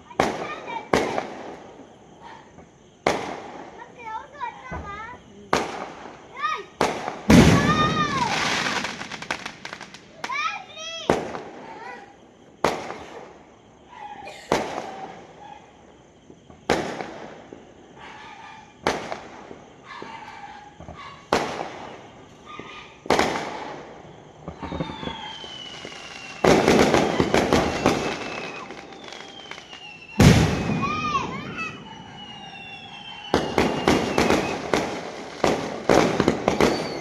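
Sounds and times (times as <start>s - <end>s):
fireworks bangs: 0.0s - 13.8s, 14.5s - 15.4s, 16.2s - 37.0s
fireworks crackling volley: 0.0s - 37.0s
long falling whistle: 24.2s - 34.7s, 36.5s - 37.0s.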